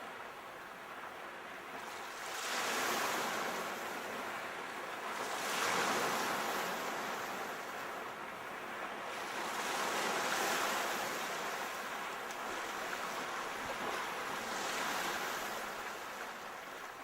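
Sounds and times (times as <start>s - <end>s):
sea waves breaking on shore: 0.0s - 17.0s.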